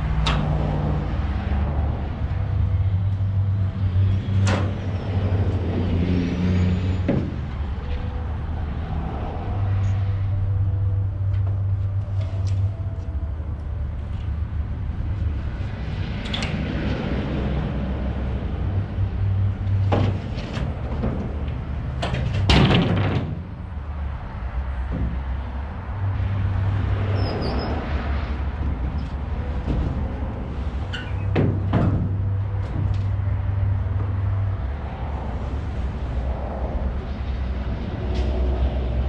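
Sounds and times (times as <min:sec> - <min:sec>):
low engine hum: 0:00.0 - 0:39.0
wooden framing crashing: 0:22.2 - 0:23.6.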